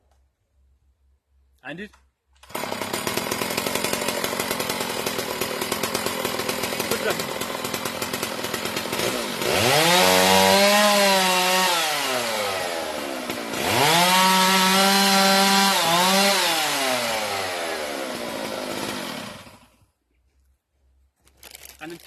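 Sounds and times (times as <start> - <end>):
chainsaw revving: 2.4 - 19.8.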